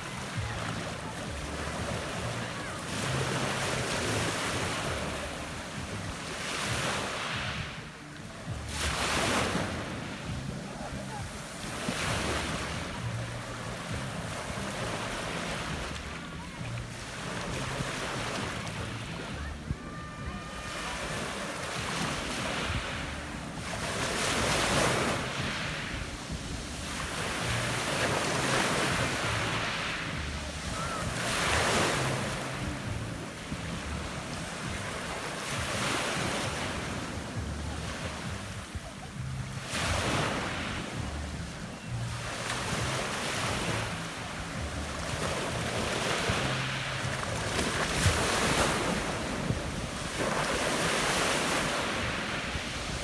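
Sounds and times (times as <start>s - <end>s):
wind buffeting microphone: 25.8s - 27.7s, 46.3s - 53.0s
waves breaking on pebble beach: 45.1s - 53.0s.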